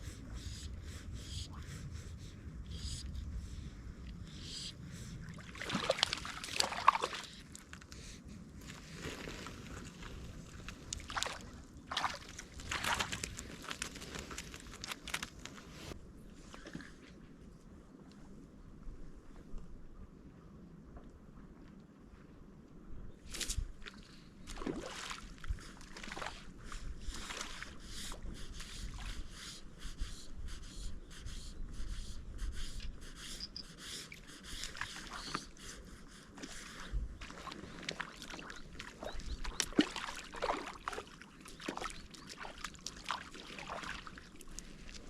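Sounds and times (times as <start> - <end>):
water splashing and sloshing: 5.1 - 17.3, 23.3 - 29.3, 36.3 - 45.0.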